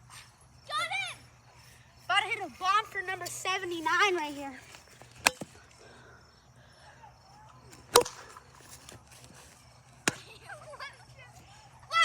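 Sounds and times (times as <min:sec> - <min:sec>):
wiffle ball bat hitting ball: 0:05.2 - 0:05.6, 0:07.7 - 0:08.6, 0:10.0 - 0:10.4.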